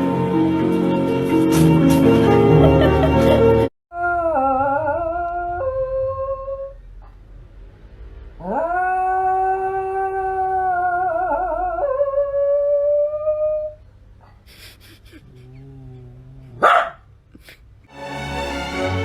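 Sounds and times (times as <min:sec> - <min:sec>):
dog howling: 0:04.0 - 0:06.8.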